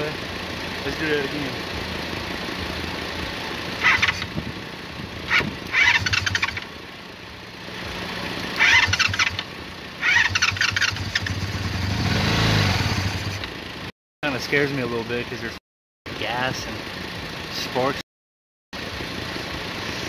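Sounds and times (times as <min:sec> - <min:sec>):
motorcycle engine cranking: 0:03.8 - 0:04.4, 0:05.3 - 0:06.7, 0:08.6 - 0:11.8.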